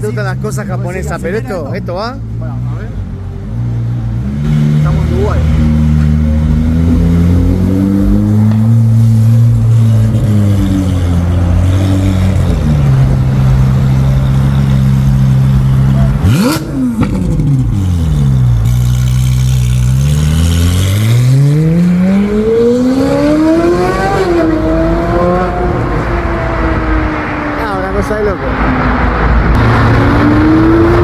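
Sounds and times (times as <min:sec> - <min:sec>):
sports car engine revving: 0:03.0 - 0:27.6, 0:28.5 - 0:31.0.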